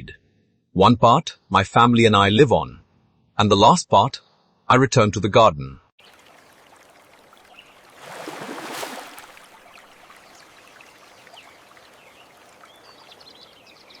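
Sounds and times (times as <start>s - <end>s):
water flowing: 6.0s - 13.8s
rush of water: 6.0s - 14.0s.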